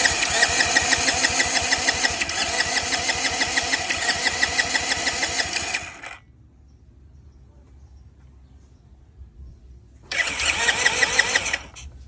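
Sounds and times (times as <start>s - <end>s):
engine cranking without firing: 0.0s - 6.2s, 10.1s - 12.0s.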